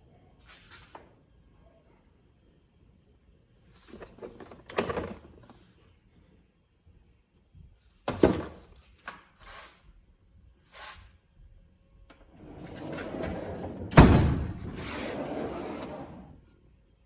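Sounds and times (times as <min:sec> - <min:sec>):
metal drawer banging shut: 0:12.4 - 0:16.4
metal drawers sliding: 0:12.4 - 0:16.4.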